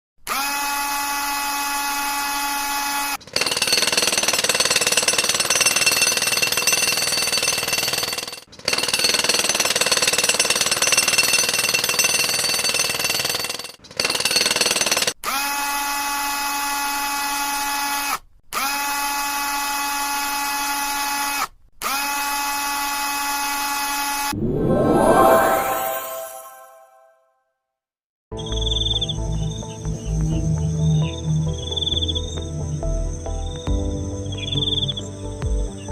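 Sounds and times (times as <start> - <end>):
harsh power tool noise: 0.2 - 4.7, 15.2 - 24.4
drill motor whine: 0.3 - 3.2, 15.2 - 24.4
rising whoosh: 24.3 - 27.0.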